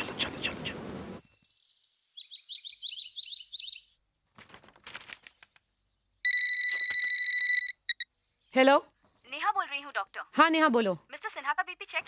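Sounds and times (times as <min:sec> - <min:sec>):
small birds chirping: 0:00.0 - 0:04.4, 0:05.1 - 0:06.2, 0:07.7 - 0:10.3
telephone ringing: 0:06.3 - 0:08.0.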